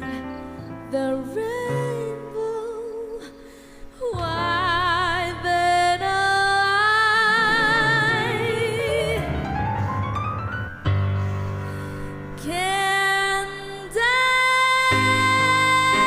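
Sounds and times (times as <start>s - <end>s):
woman singing with vibrato: 0.9s - 3.4s, 4.0s - 9.5s, 12.4s - 16.0s
instrumental accompaniment: 7.2s - 12.4s.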